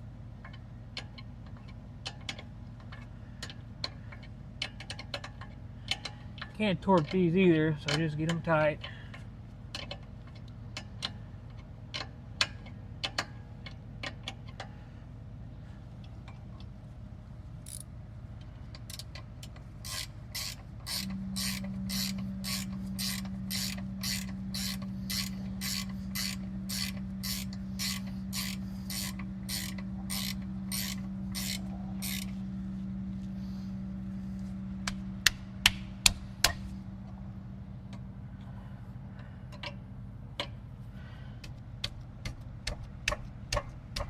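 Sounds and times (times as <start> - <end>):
steady low hum: 0.0 - 44.0
ratchet wrench clicking: 17.6 - 17.9, 18.8 - 32.4.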